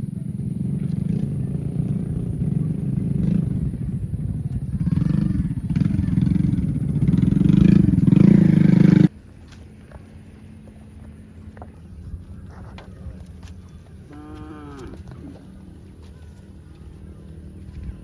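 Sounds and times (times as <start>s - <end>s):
cow mooing: 14.1s - 15.4s.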